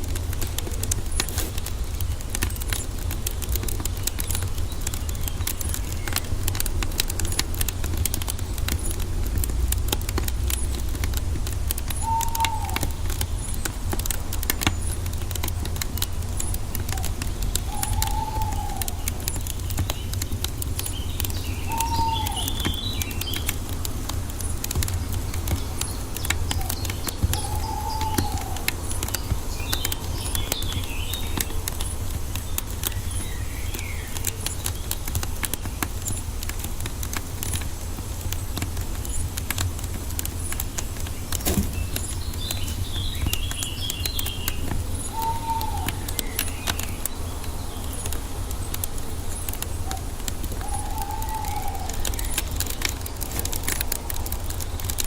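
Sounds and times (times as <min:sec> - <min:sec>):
wood fire crackling: 0:00.0 - 0:55.0
birds whistling and chirping: 0:11.8 - 0:15.4, 0:16.0 - 0:23.8, 0:24.4 - 0:35.2, 0:40.4 - 0:53.8.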